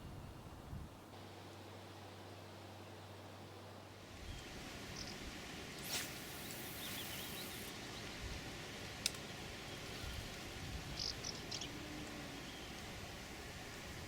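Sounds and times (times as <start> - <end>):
outdoor background hiss: 0.0 - 14.0
faint bird chirps: 4.2 - 5.2.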